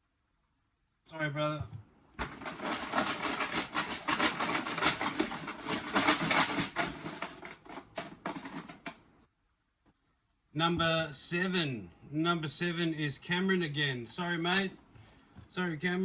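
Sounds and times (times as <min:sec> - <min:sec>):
raffle pieces rattling: 0:02.2 - 0:09.0.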